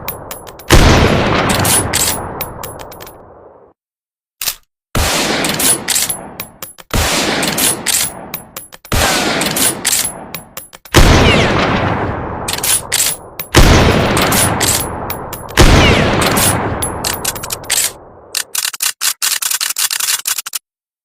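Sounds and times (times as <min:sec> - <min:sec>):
echoing rifle shots: 0:00.0 - 0:03.5, 0:05.0 - 0:18.3
rifle action clicks: 0:04.4 - 0:04.7, 0:05.4 - 0:10.9, 0:16.2 - 0:20.6.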